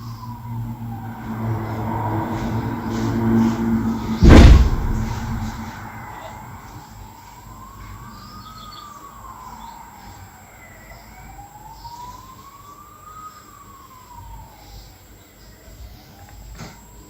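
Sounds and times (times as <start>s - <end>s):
low rumble: 0.0s - 6.5s
siren wailing: 0.0s - 14.9s.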